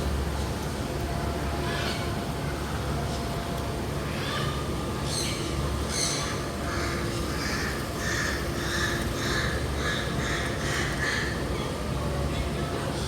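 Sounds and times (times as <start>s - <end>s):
bird cawing: 6.7s - 11.5s.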